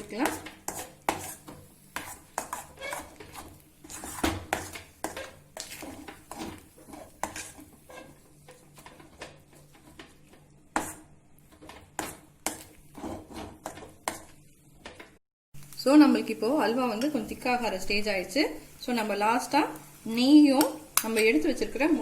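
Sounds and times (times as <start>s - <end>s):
spoon scraping and knocking pan: 0.0s - 15.2s.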